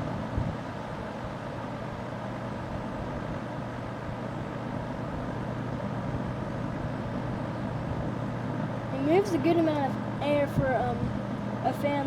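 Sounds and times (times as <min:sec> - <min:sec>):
box fan whirring: 0:00.0 - 0:12.0
low motor hum: 0:00.0 - 0:12.0.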